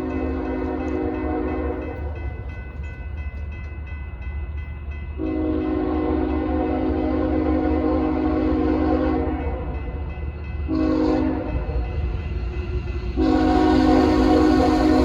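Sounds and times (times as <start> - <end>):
locomotive air horn blasts: 0.0 - 1.8, 5.2 - 9.5, 10.7 - 11.9, 13.1 - 15.0
low rumble of train: 0.0 - 15.0.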